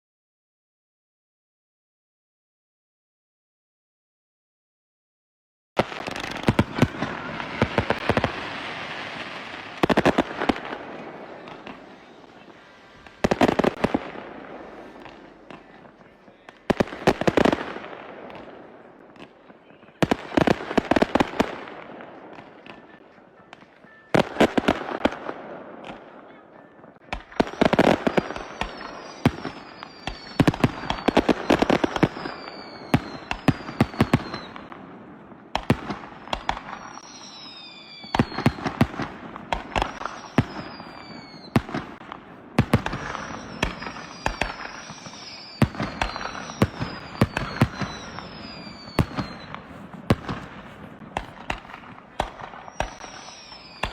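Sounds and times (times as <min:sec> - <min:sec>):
fireworks bursting with crackle: 0:05.8 - 0:53.9
falling firework whistles: 0:27.2 - 0:34.8, 0:35.8 - 0:53.9.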